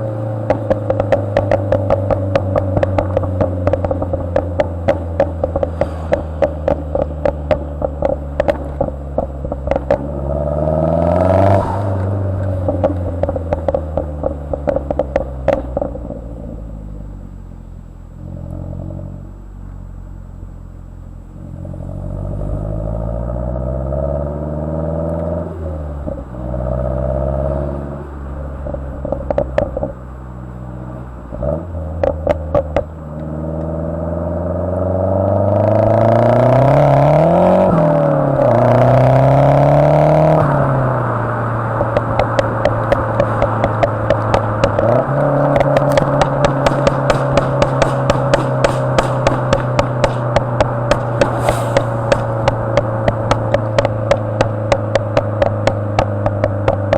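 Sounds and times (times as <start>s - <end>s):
exhaust pops and crackles: 0.0s - 16.2s, 28.4s - 30.2s, 30.8s - 33.9s, 34.7s - 56.9s
car engine revving: 0.0s - 56.9s.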